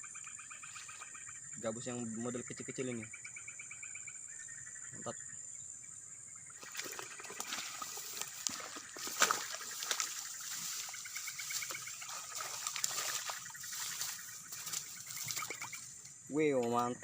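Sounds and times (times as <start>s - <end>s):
crickets trilling: 0.0s - 17.0s
water splashing and trickling: 6.5s - 16.9s.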